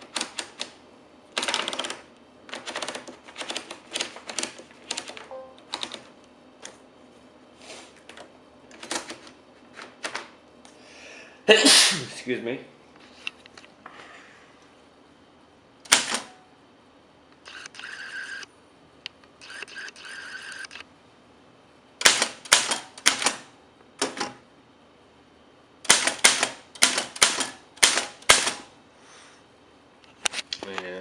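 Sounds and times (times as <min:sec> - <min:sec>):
typewriter click: 0:01.4 - 0:06.0, 0:08.1 - 0:09.3, 0:15.9 - 0:16.3, 0:22.0 - 0:23.4, 0:25.9 - 0:28.6.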